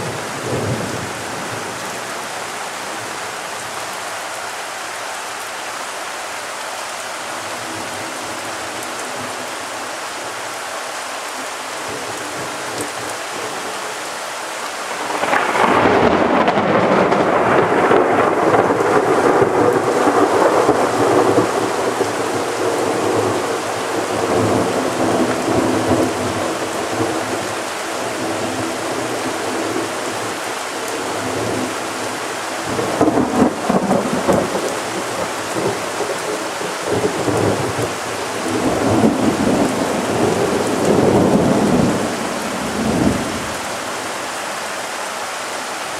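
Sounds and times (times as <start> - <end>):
heavy rain falling: 0.0 - 45.9
thunder clap and rumble: 14.9 - 23.4.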